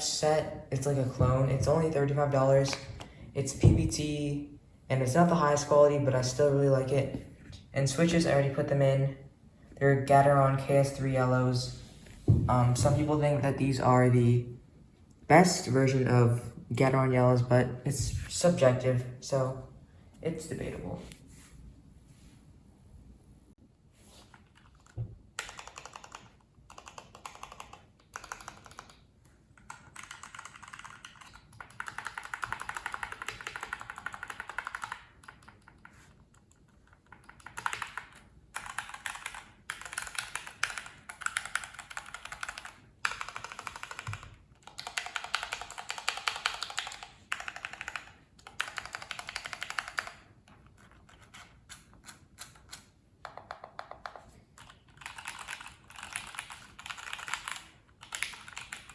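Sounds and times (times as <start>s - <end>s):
mechanical keyboard typing: 24.4s - 58.9s.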